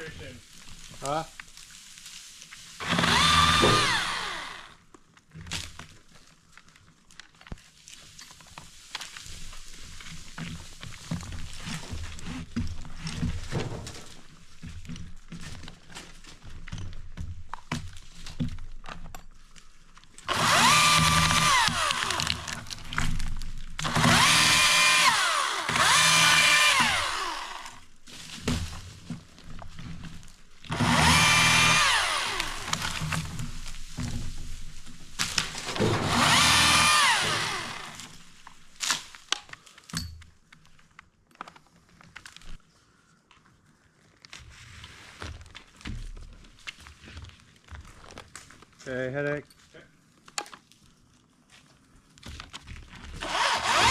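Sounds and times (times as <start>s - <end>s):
electric chainsaw motor whine: 2.8s - 4.8s, 20.3s - 22.6s, 23.8s - 27.9s, 30.7s - 33.2s, 35.8s - 38.2s, 53.2s - 53.9s.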